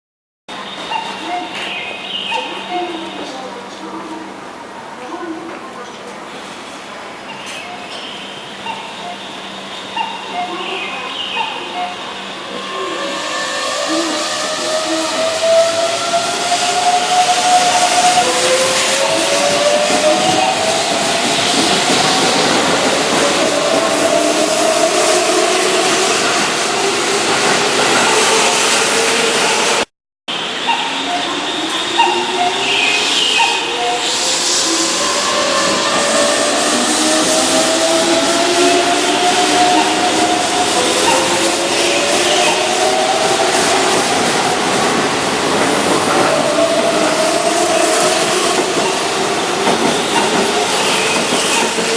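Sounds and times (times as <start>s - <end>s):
electric train rushing noise: 6.3s - 51.9s
train wheels clattering on rails: 35.3s - 51.9s.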